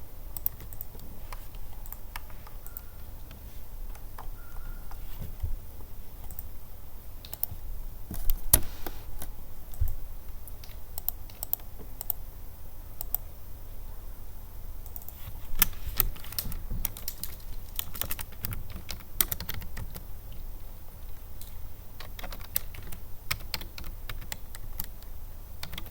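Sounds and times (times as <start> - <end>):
computer keyboard typing: 0.4 - 5.0, 6.2 - 6.5, 7.2 - 7.6, 9.2 - 12.2, 14.8 - 20.1, 21.4 - 25.9.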